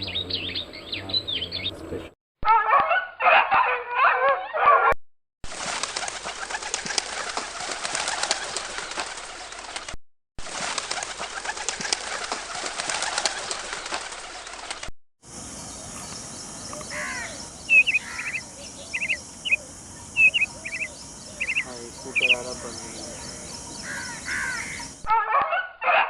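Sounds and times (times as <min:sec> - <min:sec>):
bird calls: 0:00.0 - 0:02.1, 0:15.4 - 0:25.1.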